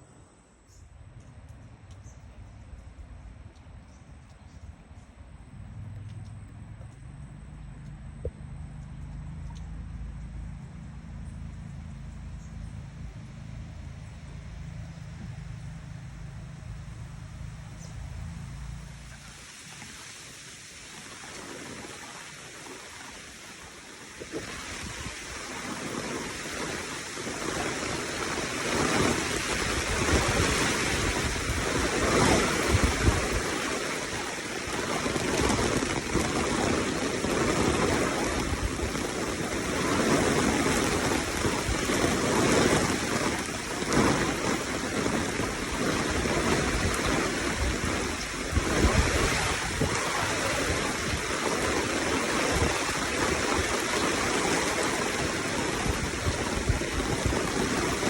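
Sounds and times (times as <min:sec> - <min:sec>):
wind rumble on microphone: 0:01.0 - 0:58.0
rushing water: 0:18.7 - 0:58.0.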